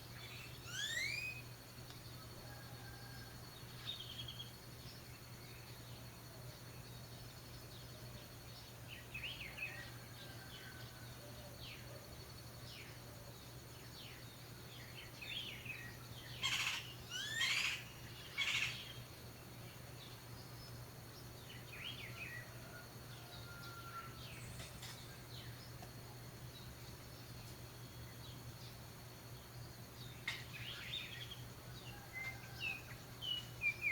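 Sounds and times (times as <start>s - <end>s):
orioles chirping and whistling: 0.6s - 1.4s.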